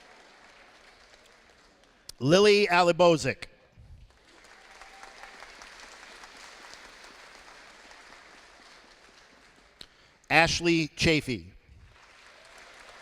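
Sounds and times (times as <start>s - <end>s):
audience applauding: 0.0s - 2.1s, 4.0s - 9.8s, 11.8s - 13.0s.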